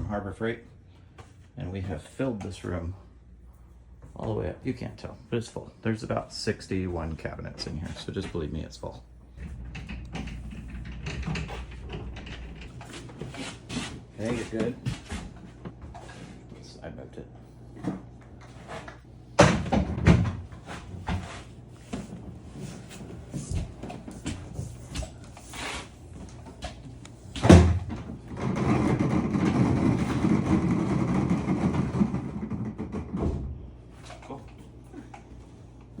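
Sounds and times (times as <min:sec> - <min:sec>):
wooden cabinet knocking and bumping: 0:19.4 - 0:20.5, 0:27.4 - 0:33.6.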